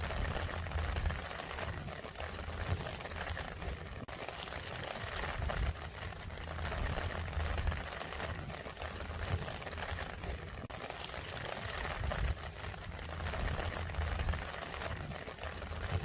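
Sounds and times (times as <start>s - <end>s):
low rumble: 0.0s - 1.3s, 5.4s - 8.0s
rain falling: 0.0s - 16.0s.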